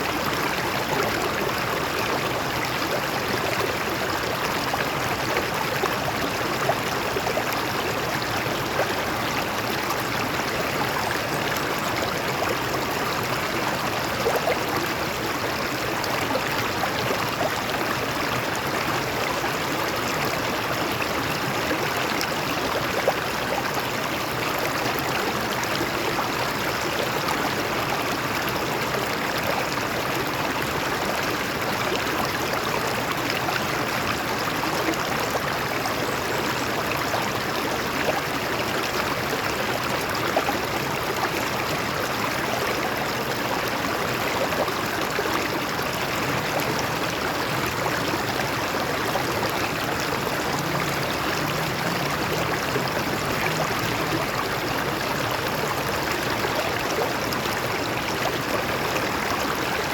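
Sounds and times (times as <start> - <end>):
stream running over rocks: 0.0 - 59.9
water splashing and gurgling: 44.5 - 59.9.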